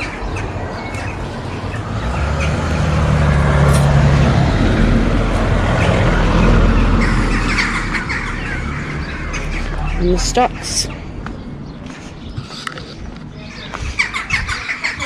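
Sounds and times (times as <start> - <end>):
vehicle engine rumble passing: 0.0 - 15.0.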